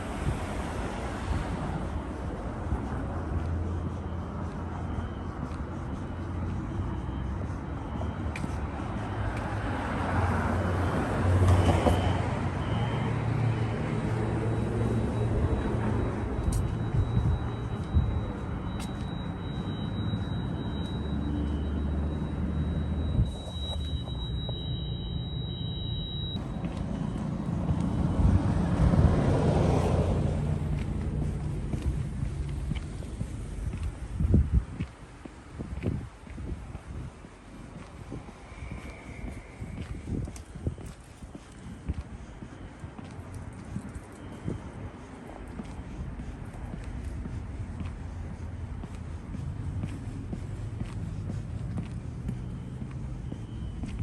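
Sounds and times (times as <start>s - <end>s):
vehicle passing: 0.0s - 34.6s, 44.7s - 54.0s
street traffic: 0.0s - 54.0s
faint fire alarm horn: 11.6s - 27.2s
motor vehicle passing: 26.4s - 34.4s, 44.9s - 54.0s.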